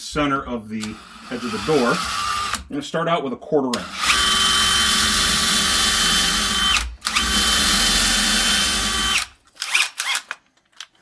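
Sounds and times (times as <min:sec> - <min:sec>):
electric drill boring into wood: 0:00.8 - 0:02.6, 0:03.8 - 0:10.2.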